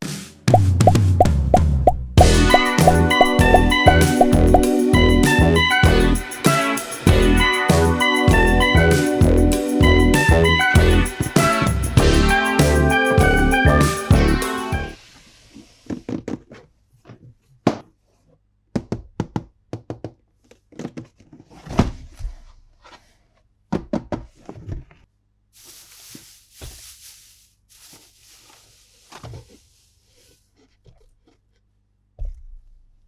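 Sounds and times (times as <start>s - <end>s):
rustling: 25.6s - 31.7s.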